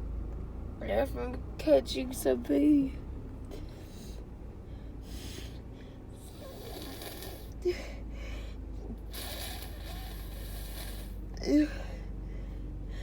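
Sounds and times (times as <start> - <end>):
congested nasal breathing: 6.2 - 7.6, 8.2 - 11.3.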